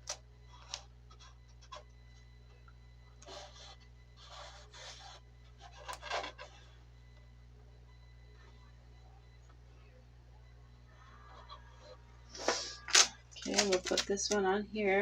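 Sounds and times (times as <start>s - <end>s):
low steady hum: 0.0s - 15.0s
fiberboard pieces rubbing: 3.2s - 6.7s.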